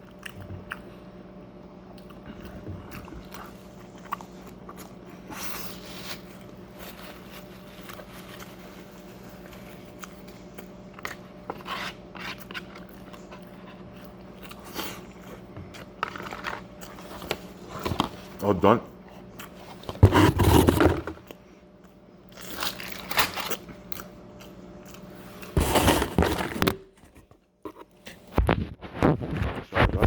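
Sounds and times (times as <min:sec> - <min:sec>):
chewing and mouth noises: 0:00.0 - 0:01.2, 0:01.9 - 0:05.5.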